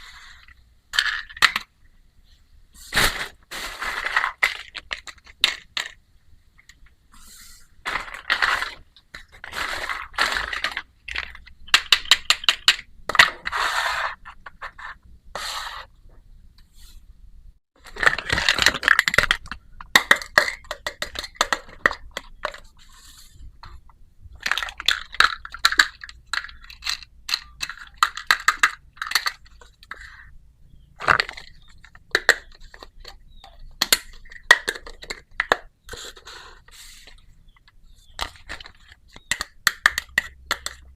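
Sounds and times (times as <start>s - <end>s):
plastic toy pieces clicking: 10.4s - 12.9s, 17.9s - 22.7s, 24.4s - 30.1s, 31.0s - 36.3s, 37.6s - 40.9s.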